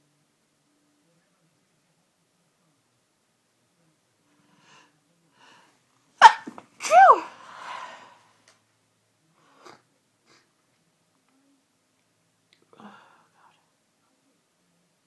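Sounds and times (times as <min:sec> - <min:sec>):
person sneezing: 0:06.2 - 0:07.4.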